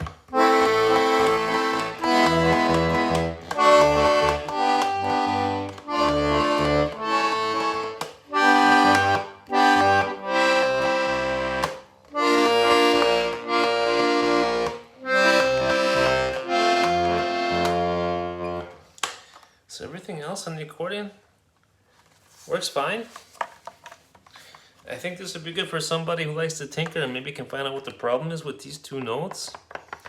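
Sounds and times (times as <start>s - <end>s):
button accordion playing: 0.0s - 18.9s.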